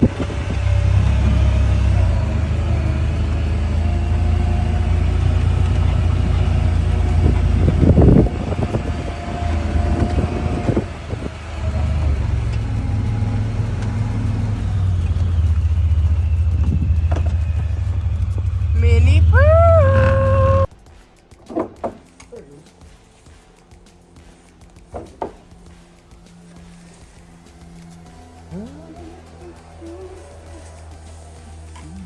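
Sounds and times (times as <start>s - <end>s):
vehicle engine rumbling: 0.0s - 32.0s.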